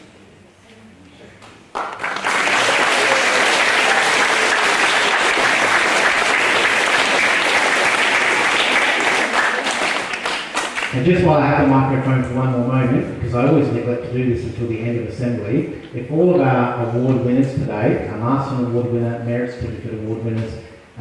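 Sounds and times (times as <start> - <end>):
audience clapping: 1.4 - 11.0.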